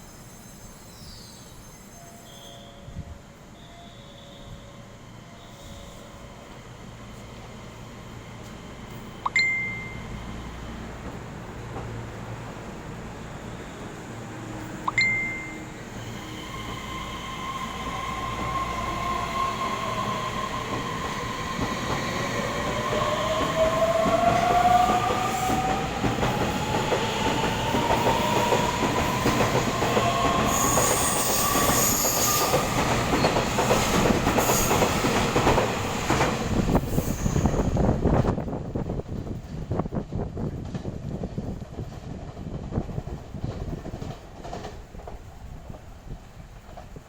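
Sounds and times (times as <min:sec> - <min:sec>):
short high tone: 0:14.9 - 0:15.7.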